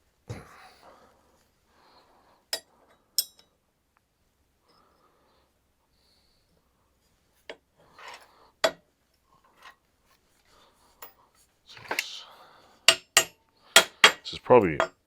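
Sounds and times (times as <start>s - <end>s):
metal tools clicking and knocking: 12.9s - 15.0s.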